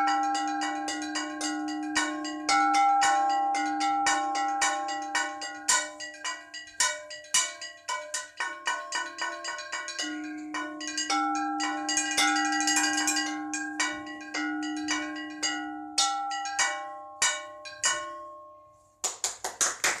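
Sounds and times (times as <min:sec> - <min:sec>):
bells ringing: 0:00.0 - 0:19.0
people clapping: 0:19.0 - 0:20.0.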